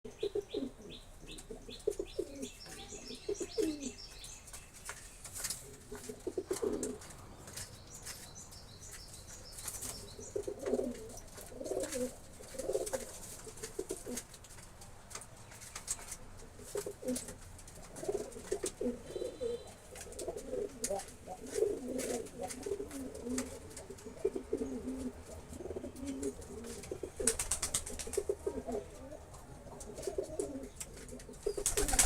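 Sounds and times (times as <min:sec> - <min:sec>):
pigeons cooing: 0:00.1 - 0:04.0, 0:05.7 - 0:07.1, 0:10.1 - 0:14.2, 0:16.6 - 0:32.0.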